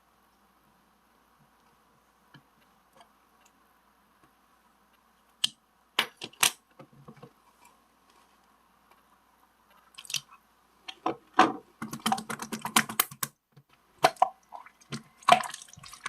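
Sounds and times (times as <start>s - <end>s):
sharp clicks and taps: 11.0s - 13.8s.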